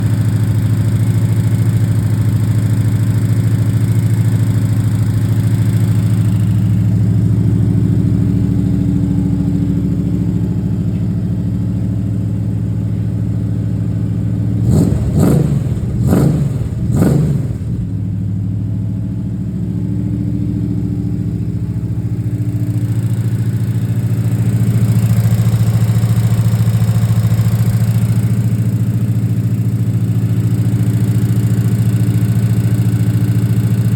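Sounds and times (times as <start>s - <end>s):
car engine running: 0.0s - 33.9s
engine lifter noise: 14.4s - 18.8s
engine revving blips: 14.6s - 18.0s.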